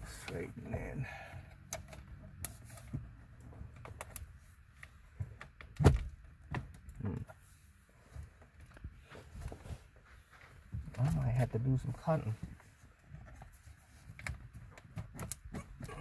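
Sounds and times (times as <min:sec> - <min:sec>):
loud thunk: 0:05.8 - 0:06.1.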